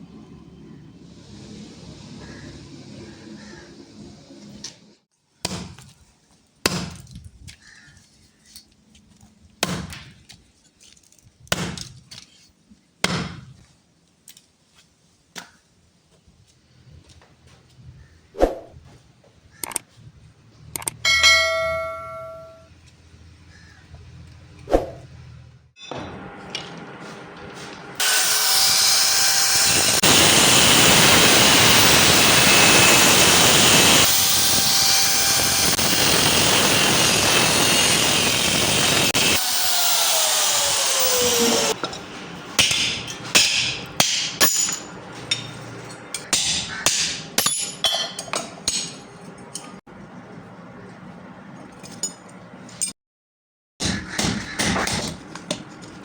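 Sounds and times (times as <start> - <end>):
sharp metal taps and clinks: 20.8 - 22.7
power tool grinding metal: 25.8 - 41.9.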